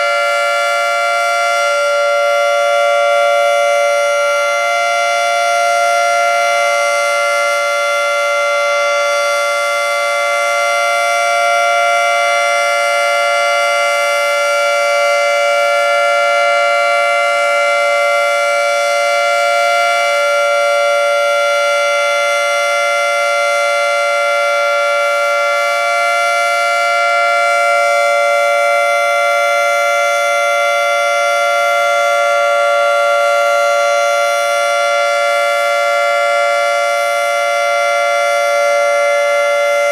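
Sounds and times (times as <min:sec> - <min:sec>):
two-tone warning siren: 0:00.0 - 0:39.9.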